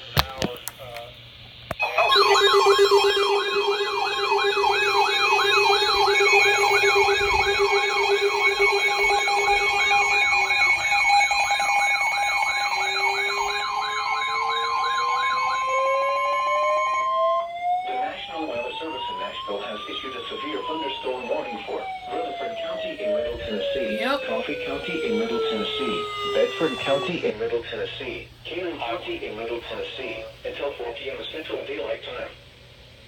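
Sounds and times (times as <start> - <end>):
siren winding up: 1.7 - 27.5
siren yelping: 1.7 - 27.6
steady siren tones: 1.7 - 28.3.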